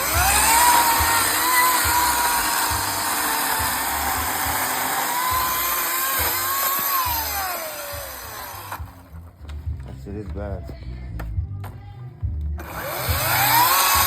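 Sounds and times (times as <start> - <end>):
chainsaw cutting log: 0.0 - 9.1, 12.6 - 14.0.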